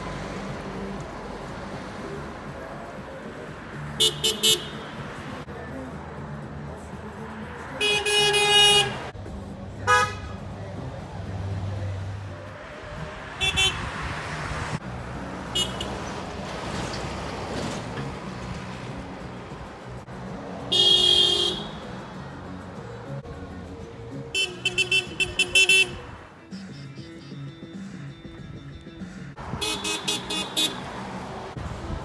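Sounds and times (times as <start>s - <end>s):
passing traffic: 0.0s - 32.0s
car horns honking: 4.0s - 5.3s, 7.8s - 9.1s, 9.8s - 10.5s, 13.4s - 14.1s, 15.5s - 16.1s, 20.7s - 22.0s, 24.4s - 27.5s, 29.4s - 31.2s.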